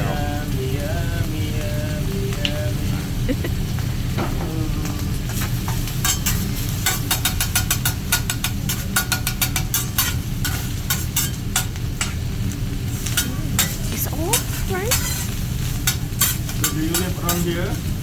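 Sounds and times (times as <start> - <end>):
food sizzling: 0.0 - 18.0
steady low rumble: 0.0 - 18.0
metal spatulas clicking on griddle: 5.4 - 12.3, 12.9 - 17.9.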